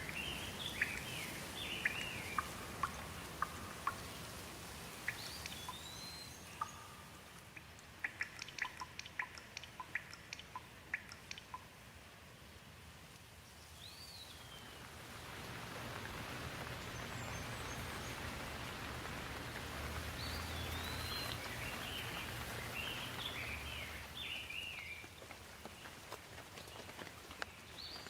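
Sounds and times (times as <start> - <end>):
bird call: 0.0 - 4.2, 5.0 - 7.2, 16.6 - 25.1
rain falling on leaves: 0.0 - 28.0.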